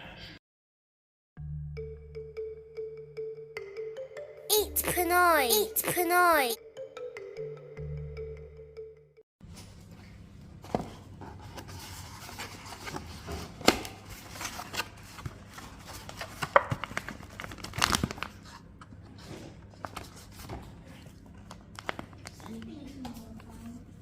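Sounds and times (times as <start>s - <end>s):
plastic packaging crinkling: 16.8s - 18.4s.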